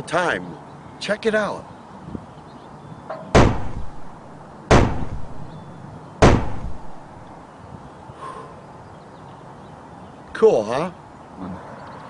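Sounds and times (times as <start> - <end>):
handgun shots: 3.4 - 5.6, 6.2 - 7.0.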